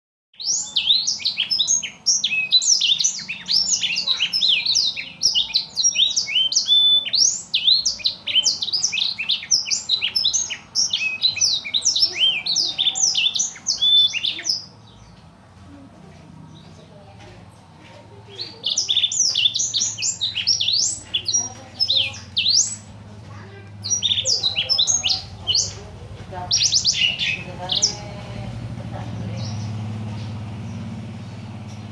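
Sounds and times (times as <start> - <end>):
canary singing fast high notes: 0.4 - 14.9, 23.8 - 28.7.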